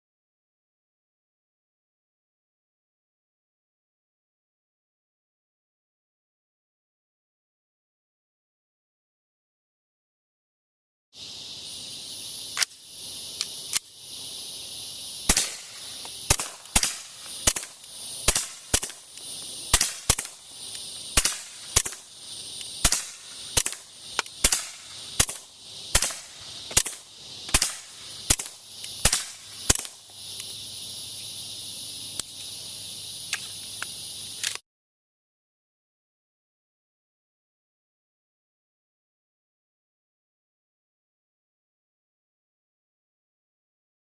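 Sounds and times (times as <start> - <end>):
steady high hiss: 11.2 - 34.6
suppressed gunshots: 15.3 - 19.0, 19.7 - 20.4, 21.2 - 22.1, 22.8 - 23.8, 24.4 - 30.0.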